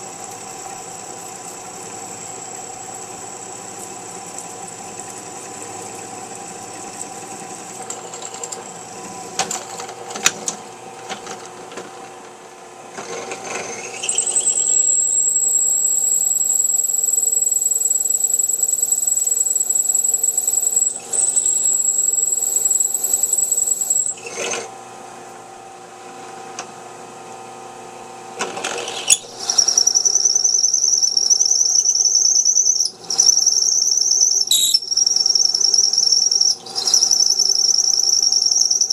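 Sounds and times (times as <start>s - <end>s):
cutting tool squealing on metal: 13.4s - 24.7s, 28.7s - 38.9s.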